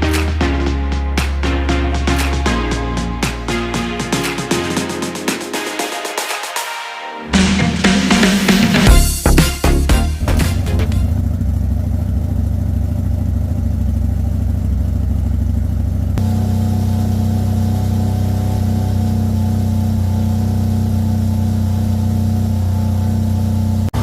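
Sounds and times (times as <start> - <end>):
engine idling: 7.4 - 24.0.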